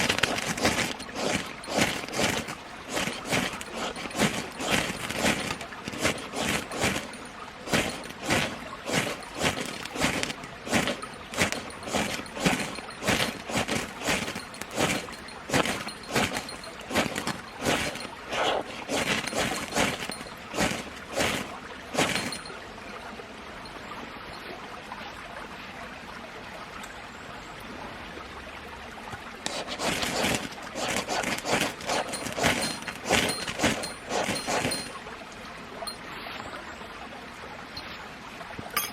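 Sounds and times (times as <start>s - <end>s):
crunching rustling strokes: 0.0s - 22.4s, 29.5s - 35.0s.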